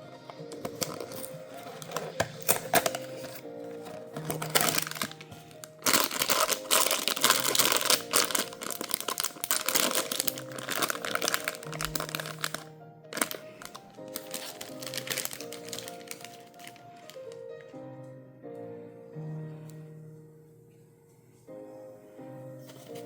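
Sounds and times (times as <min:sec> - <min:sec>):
background music: 0:00.0 - 0:23.0
packaging crinkling: 0:00.3 - 0:17.4, 0:22.6 - 0:23.0.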